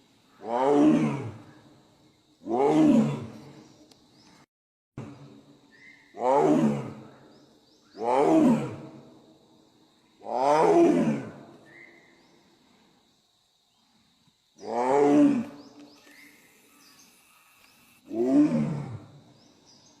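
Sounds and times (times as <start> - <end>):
tiger roaring: 0.4 - 1.4, 2.4 - 3.6, 6.2 - 7.1, 8.0 - 9.0, 10.3 - 11.4, 14.6 - 15.6, 18.0 - 19.2.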